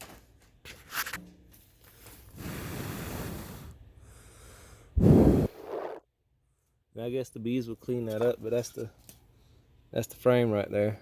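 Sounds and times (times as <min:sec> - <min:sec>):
loud puff of air: 0:02.3 - 0:06.0
person exhaling: 0:02.4 - 0:06.0.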